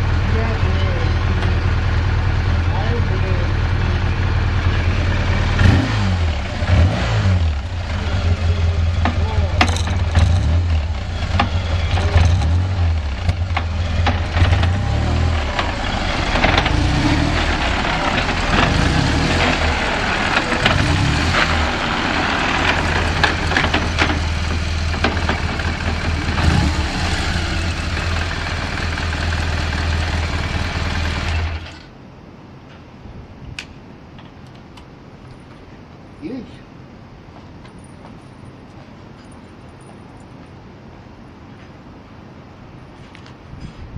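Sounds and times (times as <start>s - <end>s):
motorcycle engine idling: 0.0s - 6.7s, 7.4s - 31.7s.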